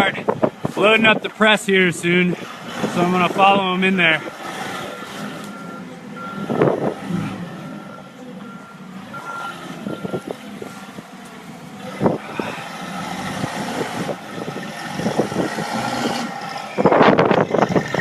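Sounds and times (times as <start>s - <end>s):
forklift engine running: 0.1s - 18.0s
reversing beeper: 4.8s - 11.0s, 11.9s - 13.4s.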